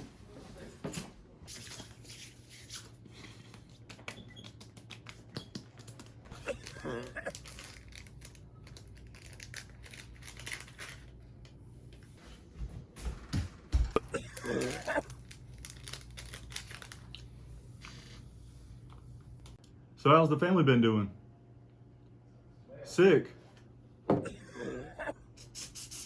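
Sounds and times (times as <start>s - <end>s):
steady low hum: 6.0s - 25.8s.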